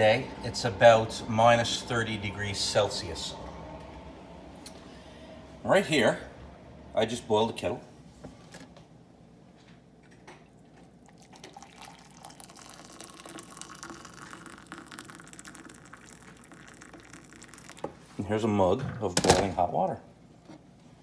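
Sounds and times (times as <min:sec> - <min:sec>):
water poured into mug: 0:11.0 - 0:17.9.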